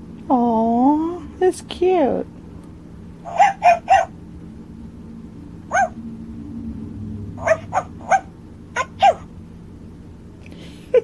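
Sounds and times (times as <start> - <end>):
toy dog electronic barking: 3.3 - 4.2, 5.7 - 6.0, 7.4 - 9.3.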